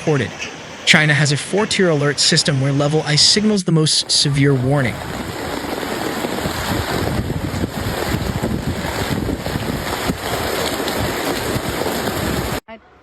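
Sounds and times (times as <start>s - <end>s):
moving water: 0.0s - 12.6s
rushing wind: 0.0s - 12.6s
wind buffeting microphone: 4.0s - 12.6s.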